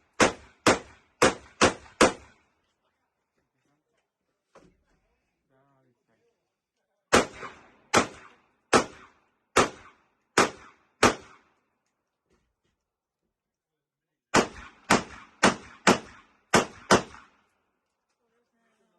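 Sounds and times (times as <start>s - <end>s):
rifle shots: 0.0s - 2.4s, 7.1s - 11.6s, 14.3s - 17.5s.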